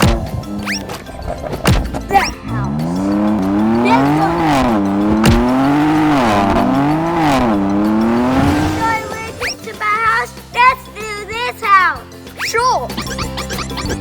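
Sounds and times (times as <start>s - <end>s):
monster truck engine revving: 0.0s - 9.7s.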